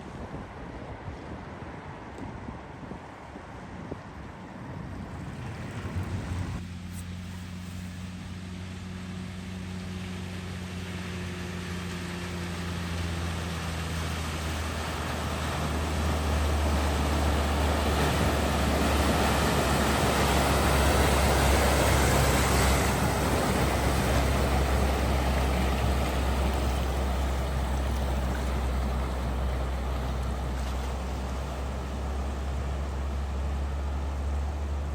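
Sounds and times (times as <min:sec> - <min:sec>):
vehicle engine running: 0:04.9 - 0:34.9
water rushing: 0:08.1 - 0:34.9.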